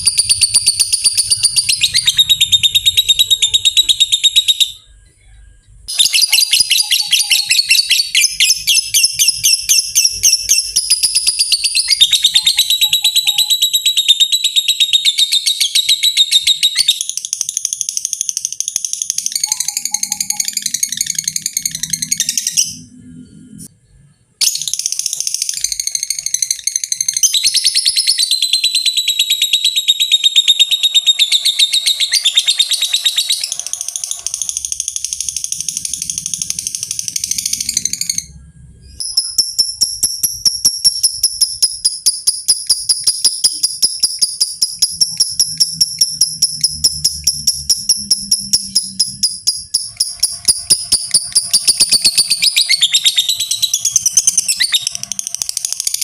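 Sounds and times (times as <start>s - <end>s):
lovebird chattering trills: 15.2s - 22.9s, 24.4s - 38.3s, 39.0s - 56.0s.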